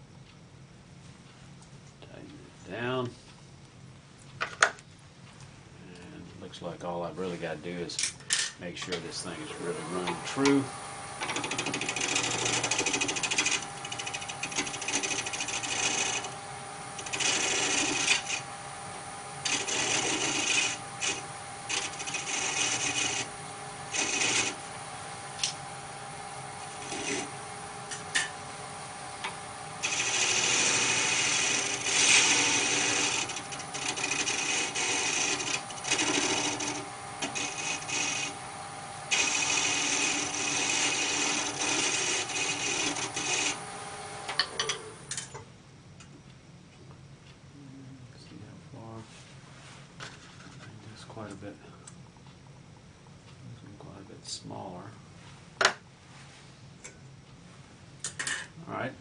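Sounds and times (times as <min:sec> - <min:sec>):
lathe motor whine: 0:08.9 - 0:45.1
turning tool scraping wood: 0:08.9 - 0:45.1.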